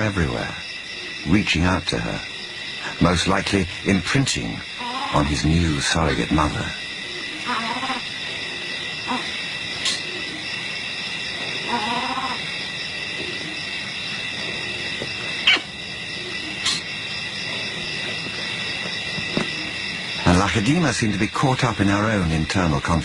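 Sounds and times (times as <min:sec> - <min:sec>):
high-pitched bush drone: 0:00.0 - 0:23.0
wild animal calls: 0:04.6 - 0:20.4.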